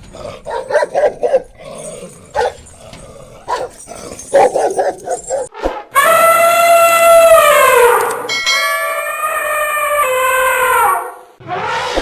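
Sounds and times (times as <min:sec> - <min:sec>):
dog barking: 0:00.2 - 0:05.5.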